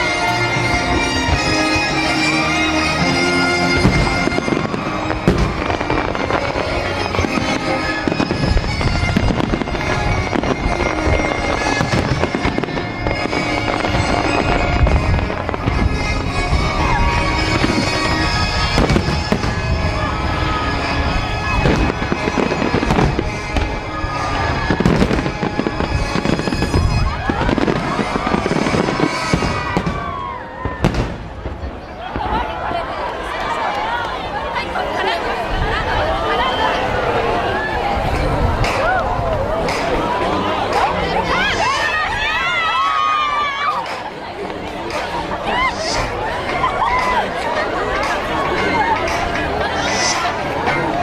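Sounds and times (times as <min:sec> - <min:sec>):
fireworks bangs and crackle: 0:00.0 - 0:33.8
music playing: 0:00.0 - 0:51.0.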